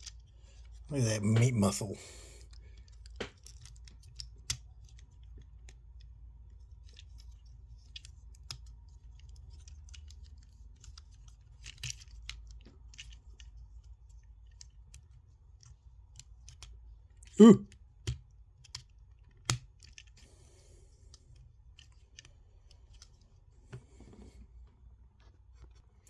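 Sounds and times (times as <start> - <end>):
plastic toy parts clicking: 2.4 - 20.2, 21.2 - 23.2
sharp plastic snaps: 18.0 - 20.1.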